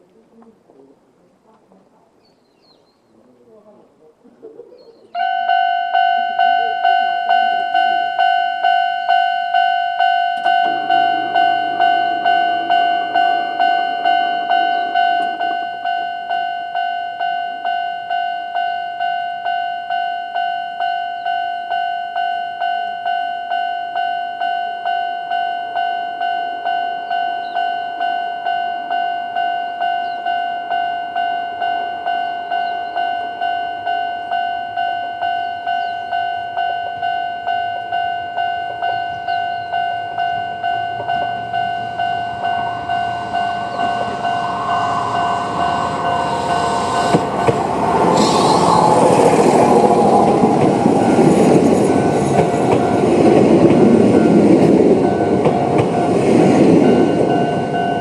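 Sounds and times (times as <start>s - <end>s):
approaching train: 0.0s - 58.0s
level crossing electronic bell: 5.2s - 47.2s.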